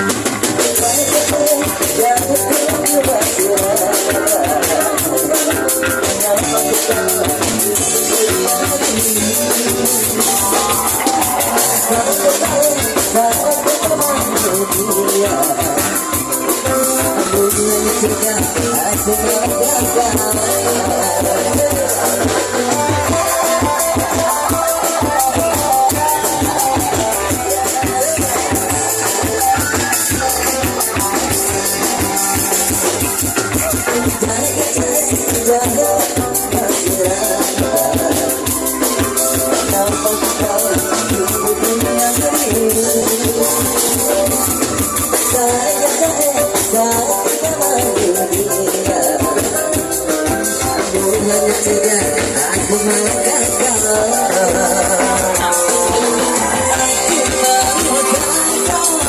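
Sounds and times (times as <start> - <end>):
band playing a song: 0.0 - 59.0
drum kit beat: 0.0 - 59.0.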